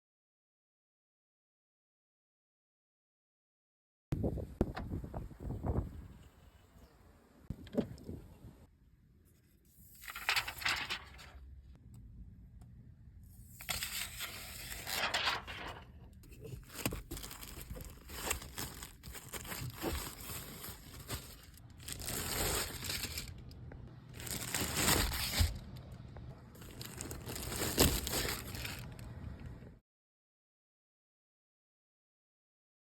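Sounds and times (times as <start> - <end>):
plastic crinkling: 10.0 - 11.4, 13.6 - 25.9, 26.6 - 29.1
plastic wrapping being torn off: 13.7 - 15.8, 16.4 - 23.5, 24.2 - 25.8, 26.6 - 29.0.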